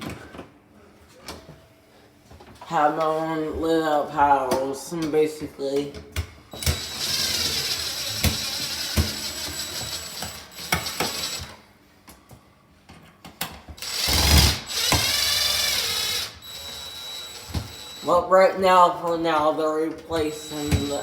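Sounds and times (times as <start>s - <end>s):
ratcheting tool whirring: 13.8s - 18.0s.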